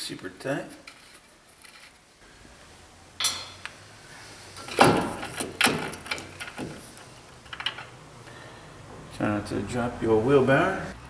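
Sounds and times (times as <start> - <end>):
hand tools clanking on metal: 3.2 - 3.7.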